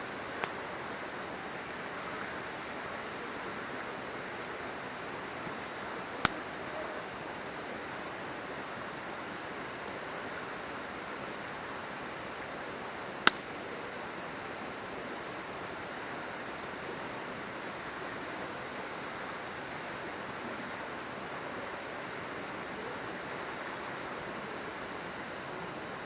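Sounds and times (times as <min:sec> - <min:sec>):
river rushing: 0:00.0 - 0:26.0
firewood popping: 0:13.2 - 0:13.5.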